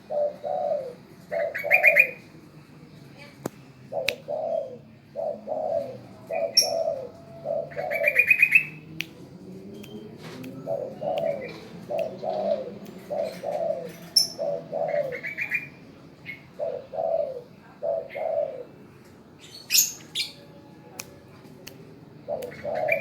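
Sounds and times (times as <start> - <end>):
dove cooing: 0.0 - 2.3, 3.9 - 8.8, 10.0 - 18.8, 22.2 - 23.0
small birds chirping: 3.0 - 20.5, 21.6 - 23.0.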